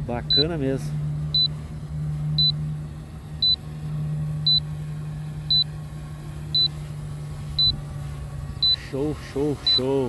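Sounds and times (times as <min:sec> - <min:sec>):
steady low hum: 0:00.0 - 0:10.0
short high beeps: 0:09.7 - 0:10.0.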